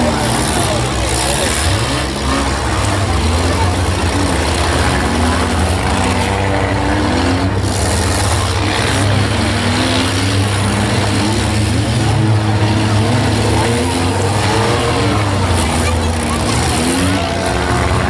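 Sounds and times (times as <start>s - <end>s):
car engines revving: 0.0s - 18.0s.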